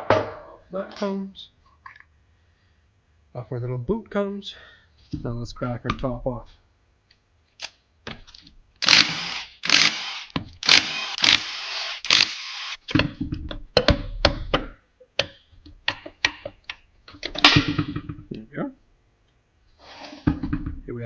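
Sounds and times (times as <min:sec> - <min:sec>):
power tool bursts: 0:08.8 - 0:12.8.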